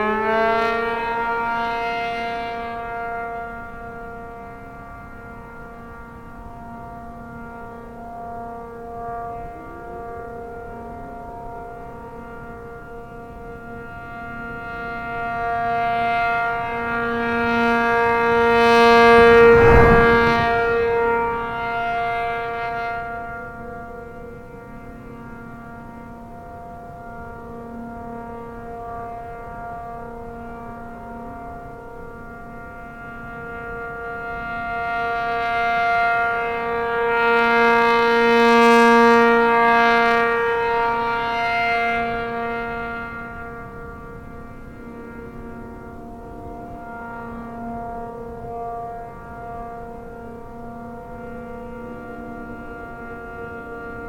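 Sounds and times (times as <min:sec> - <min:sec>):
dual-tone siren alert: 0:00.0 - 0:05.3, 0:07.7 - 0:22.8
two-tone warning siren: 0:00.0 - 0:54.0.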